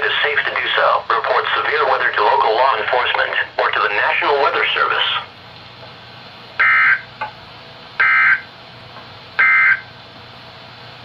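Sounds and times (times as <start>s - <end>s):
receiver hiss: 0.0s - 11.0s
buzzing two-tone digital signal: 6.6s - 7.1s, 8.0s - 8.5s, 9.4s - 9.9s.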